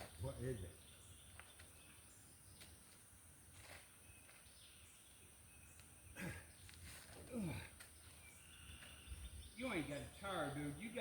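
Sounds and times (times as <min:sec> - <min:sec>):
faint outdoor hiss: 0:00.0 - 0:11.0.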